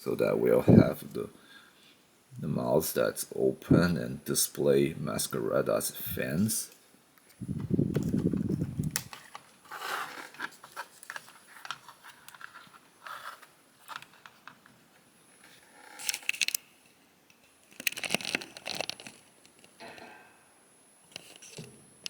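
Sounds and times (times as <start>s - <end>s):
plastic parts clicking and scraping: 7.9s - 14.7s, 16.0s - 16.6s, 17.7s - 19.7s.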